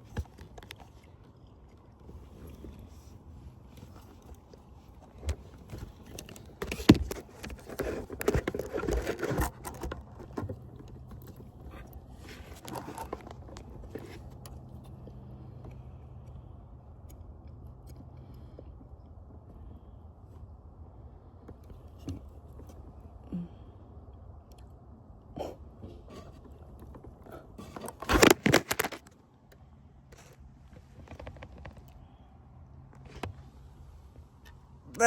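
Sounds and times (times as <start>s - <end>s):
faint low hum: 0.0s - 35.0s
scraping and rattling: 5.6s - 14.4s, 25.8s - 29.1s.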